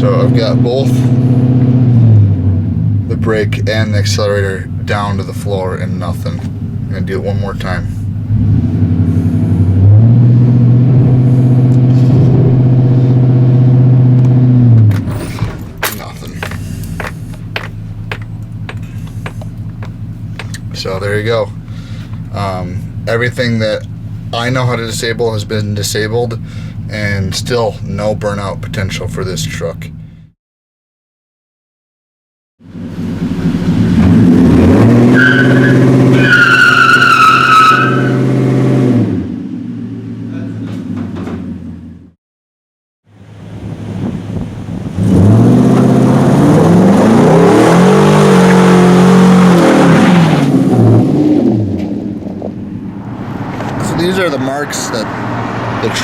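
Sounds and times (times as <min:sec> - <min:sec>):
engine revving under load: 0:00.0 - 0:05.3, 0:06.0 - 0:23.2, 0:32.6 - 0:41.9, 0:43.2 - 0:56.0
tyres squealing: 0:35.1 - 0:38.2.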